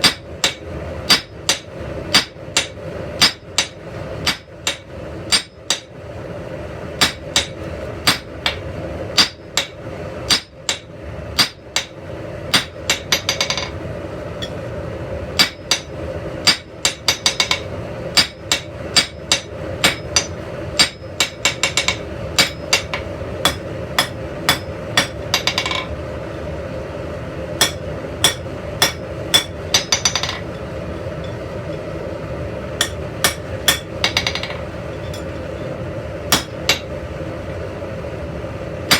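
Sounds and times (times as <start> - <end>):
steady hum: 0.0 - 38.9
hammer blows on anvil: 15.4 - 25.9, 27.6 - 31.9, 32.8 - 35.6.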